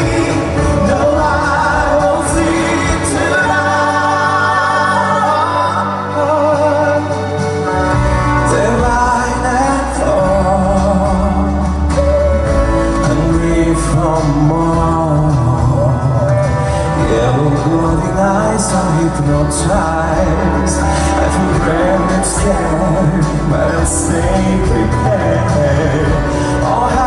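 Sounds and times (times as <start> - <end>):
pop ballad music: 0.0 - 27.0.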